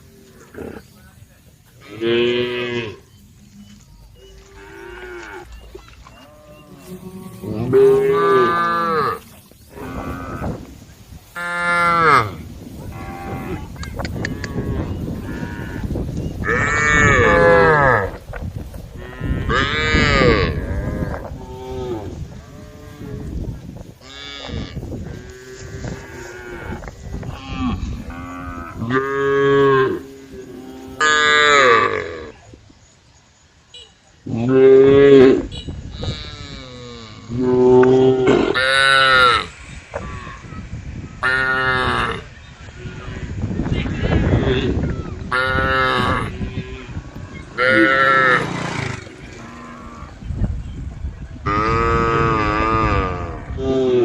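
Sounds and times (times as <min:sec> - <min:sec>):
cows mooing: 0:01.8 - 0:10.7, 0:11.4 - 0:18.2, 0:19.0 - 0:23.4, 0:24.0 - 0:32.3, 0:44.3 - 0:50.2
cattle mooing: 0:03.7 - 0:10.6, 0:45.4 - 0:50.2.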